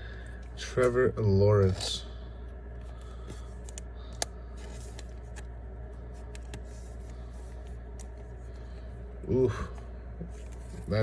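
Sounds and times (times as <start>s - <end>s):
steady low hum: 0.0s - 11.0s
trading cards being handled: 3.0s - 8.9s.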